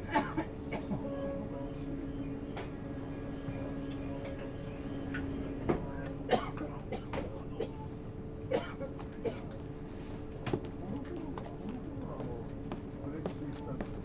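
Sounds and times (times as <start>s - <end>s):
train electrical hum: 0.0s - 14.0s
person coughing: 0.1s - 1.0s, 6.3s - 7.8s, 8.5s - 9.6s.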